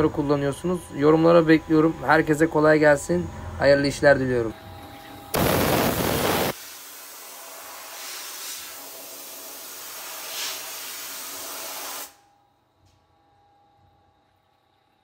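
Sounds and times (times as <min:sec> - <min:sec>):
steady hiss: 0:05.4 - 0:12.2
faint background hum: 0:12.1 - 0:15.0.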